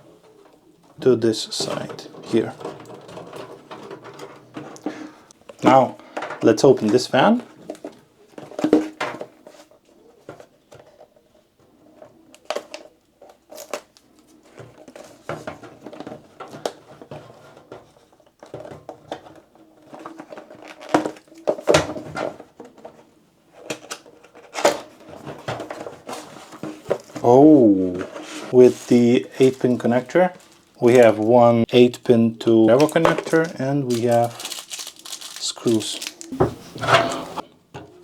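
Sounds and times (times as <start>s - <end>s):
plastic packaging crinkling: 12.3s - 17.0s, 28.5s - 31.3s, 32.6s - 37.4s.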